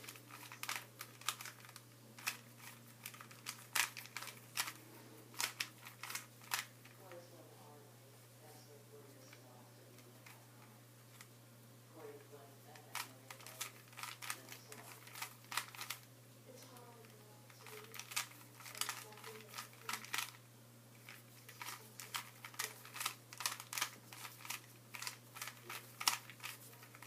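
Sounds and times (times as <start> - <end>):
puzzle cube clicking: 0.1 - 4.8, 5.4 - 6.7, 12.8 - 16.0, 17.6 - 20.4, 21.0 - 27.0.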